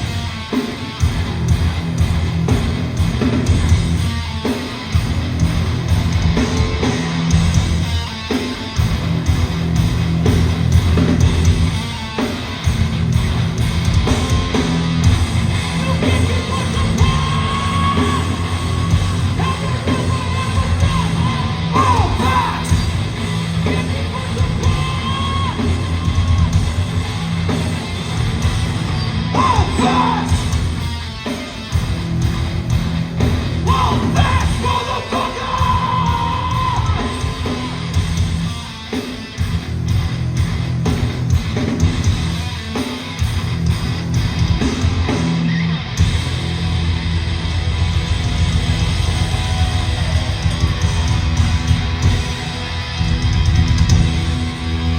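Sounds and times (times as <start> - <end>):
live hardcore band playing: 0.0 - 54.9
shouted vocals: 15.7 - 26.5, 29.2 - 30.6, 33.6 - 37.9, 48.7 - 52.1.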